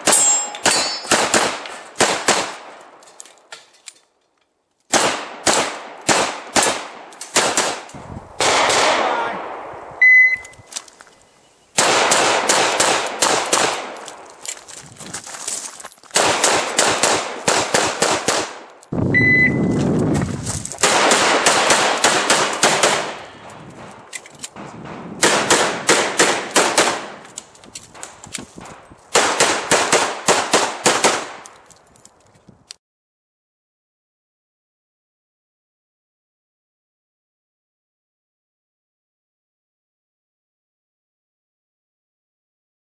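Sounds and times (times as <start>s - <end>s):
pistol shots in rapid bursts: 0.0s - 3.0s, 4.9s - 9.7s, 11.8s - 14.2s, 16.1s - 18.7s, 20.8s - 24.0s, 24.6s - 27.3s, 27.9s - 31.6s
electronic shot timer beep: 10.0s - 10.6s, 19.1s - 19.7s.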